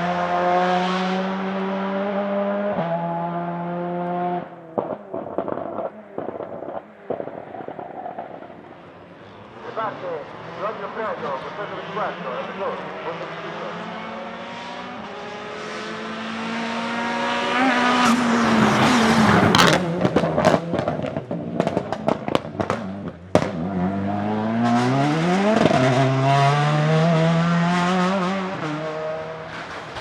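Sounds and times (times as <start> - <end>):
car engine revving: 0.0 - 30.0
exhaust crackles and pops: 4.0 - 9.9, 18.8 - 23.7.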